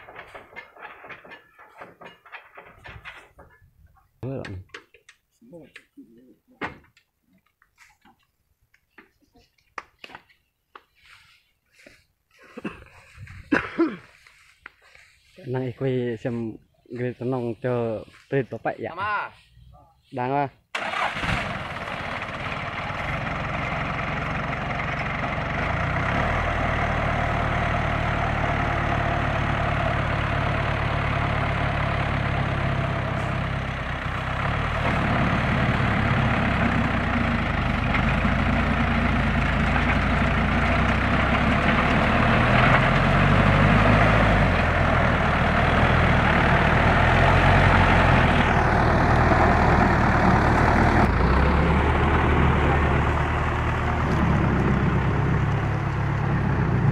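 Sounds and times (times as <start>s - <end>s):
truck engine running under load: 20.8s - 56.9s.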